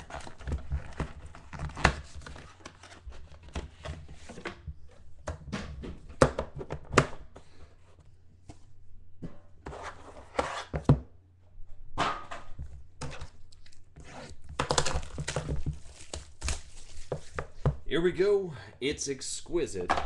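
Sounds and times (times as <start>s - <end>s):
cardboard and wrapping rustling: 0.0s - 4.9s, 13.2s - 17.8s.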